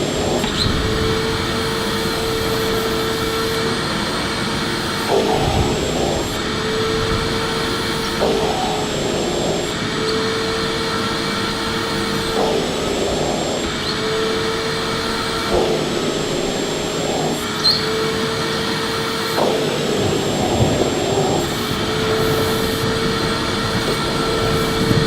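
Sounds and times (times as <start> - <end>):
vacuum cleaner running: 0.0 - 25.0.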